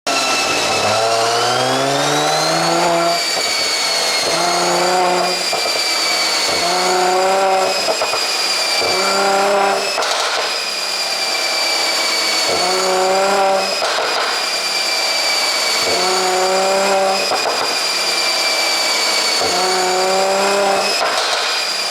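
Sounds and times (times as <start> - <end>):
car engine revving: 0.1 - 10.4, 12.3 - 14.3, 15.4 - 17.9, 18.7 - 21.3.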